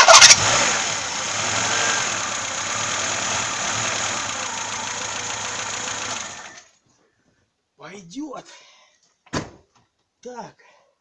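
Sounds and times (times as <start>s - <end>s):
car engine idling: 0.0s - 6.7s.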